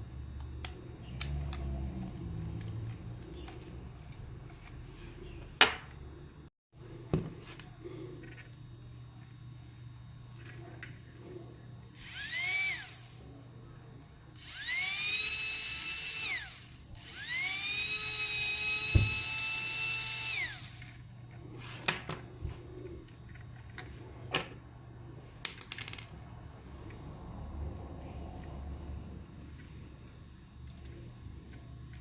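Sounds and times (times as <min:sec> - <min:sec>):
small electric motor whining: 0:11.9 - 0:13.3, 0:14.4 - 0:21.0.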